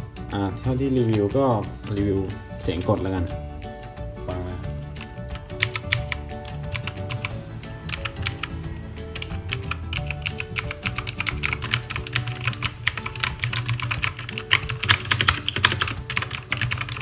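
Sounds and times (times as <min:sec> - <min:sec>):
background music: 0:00.0 - 0:17.0
clicky mechanical keyboard typing: 0:05.0 - 0:07.3, 0:07.9 - 0:08.6, 0:09.2 - 0:17.0.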